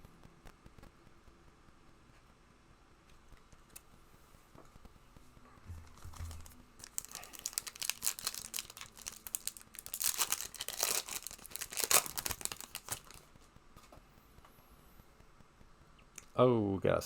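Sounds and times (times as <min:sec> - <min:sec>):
foil wrapper tearing and crinkling: 0:06.2 - 0:13.3.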